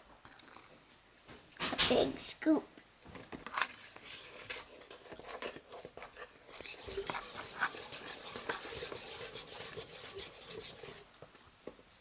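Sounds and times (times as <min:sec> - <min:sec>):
scooper scraping a bowl: 0:03.5 - 0:11.5.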